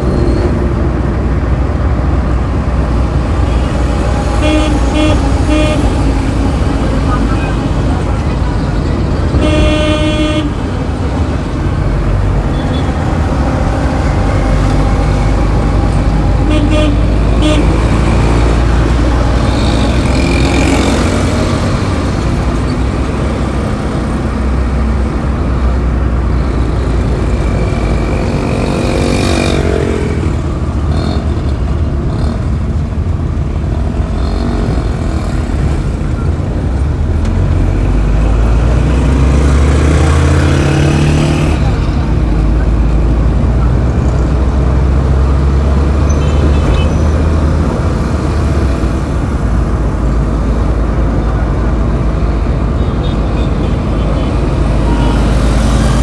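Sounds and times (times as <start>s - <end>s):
engine revving: 0.0s - 56.0s
road traffic rumble: 0.0s - 56.0s
car horn toots: 3.2s - 21.5s, 46.0s - 47.2s.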